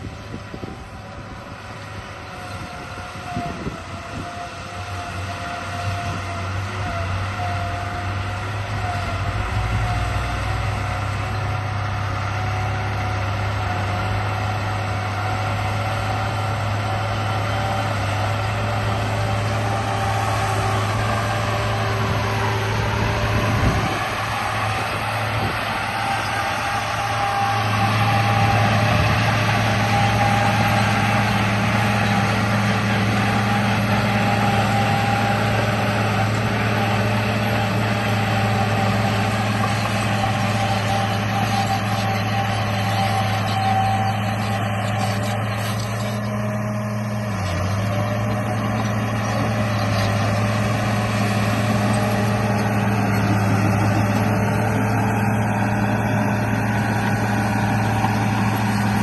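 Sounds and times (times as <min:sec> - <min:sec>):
toy bulldozer motor hum: 0:12.5 - 0:59.0.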